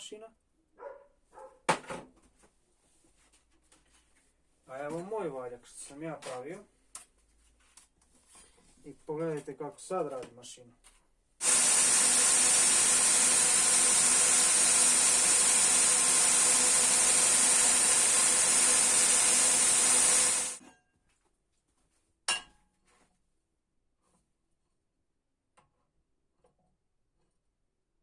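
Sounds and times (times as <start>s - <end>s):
belt grinder high-pitched hiss: 11.4s - 20.6s.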